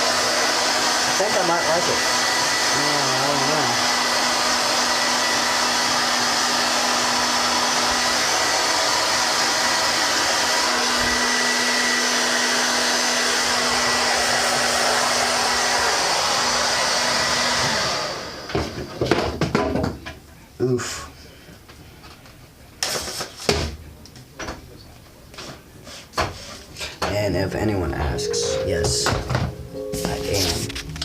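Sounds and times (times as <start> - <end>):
hair dryer blowing: 0.0 - 19.0.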